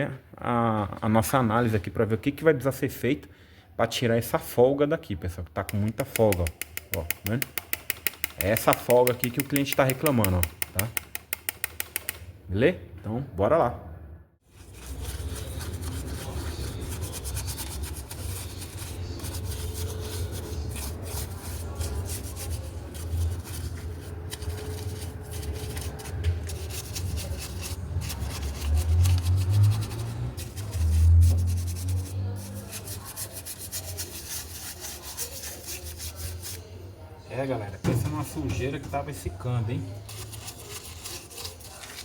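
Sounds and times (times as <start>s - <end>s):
brush scrubbing: 14.5s - 36.7s, 38.0s - 42.0s.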